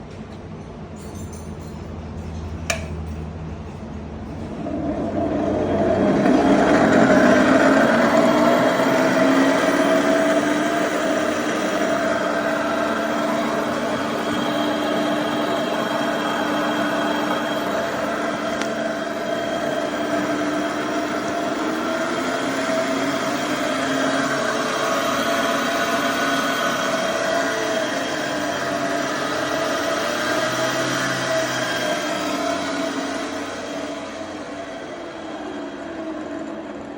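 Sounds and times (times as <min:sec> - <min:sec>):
switch click: 0:02.7 - 0:03.0
motor whining and grinding: 0:04.6 - 0:36.9.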